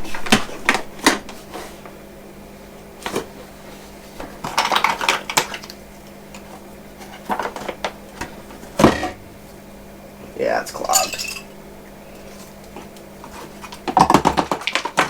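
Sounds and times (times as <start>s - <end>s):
shop vac knocking and rattling: 7.4s - 9.5s, 13.8s - 15.0s.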